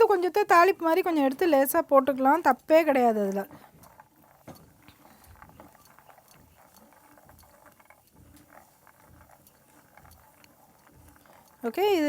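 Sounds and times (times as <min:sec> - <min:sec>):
peanuts crackling in oil: 0:00.0 - 0:12.0
small ticks: 0:02.6 - 0:12.0.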